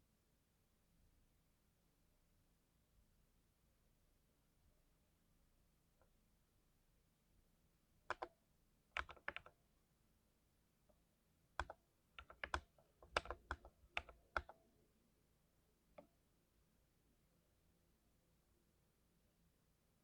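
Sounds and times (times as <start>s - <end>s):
mechanical keyboard typing: 8.1s - 8.3s, 9.0s - 9.5s, 11.6s - 14.6s.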